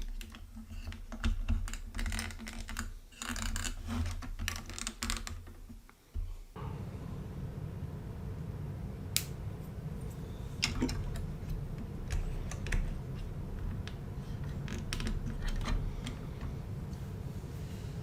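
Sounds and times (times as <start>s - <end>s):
steady low rumble: 6.6s - 18.0s.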